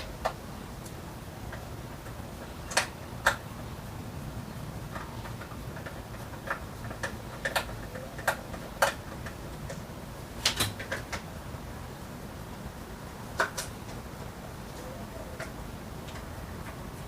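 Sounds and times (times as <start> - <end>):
hard plastic parts clicking: 4.9 - 9.8.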